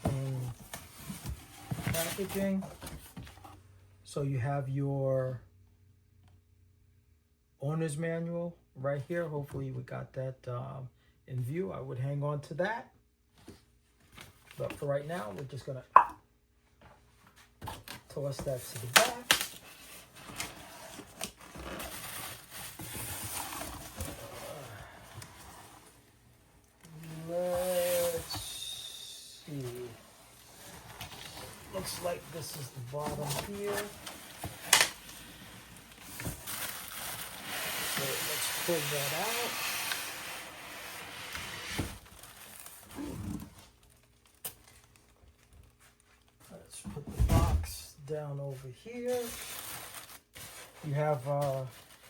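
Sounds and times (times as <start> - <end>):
cardboard rustling and scraping: 0.0 - 3.6, 16.9 - 44.0, 49.0 - 52.0.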